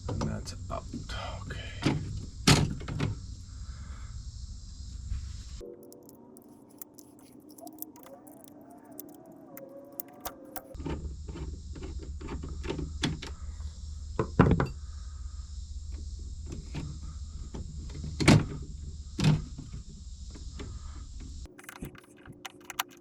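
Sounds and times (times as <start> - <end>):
low hum and hiss: 0.0 - 5.6.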